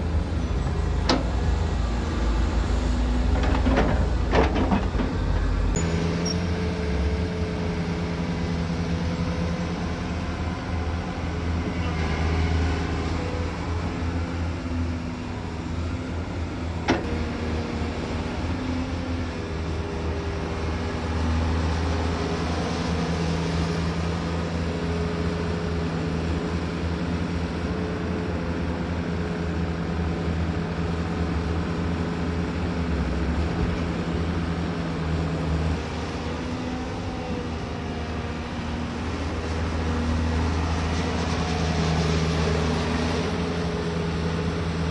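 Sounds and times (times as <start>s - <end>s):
diesel machinery engine running: 0.0s - 44.9s.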